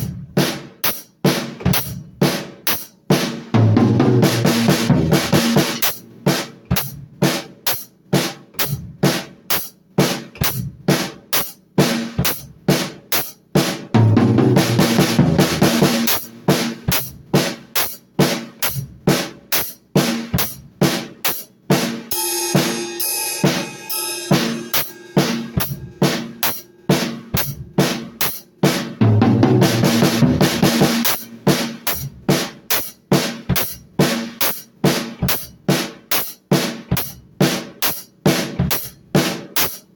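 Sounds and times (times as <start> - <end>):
drum kit playing a beat: 0.0 - 39.9.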